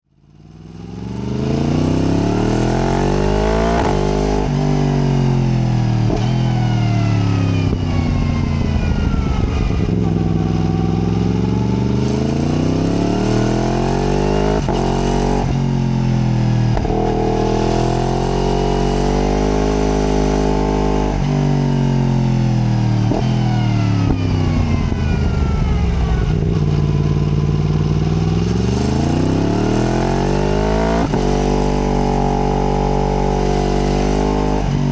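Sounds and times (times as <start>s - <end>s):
motorcycle engine revving: 0.2s - 34.9s.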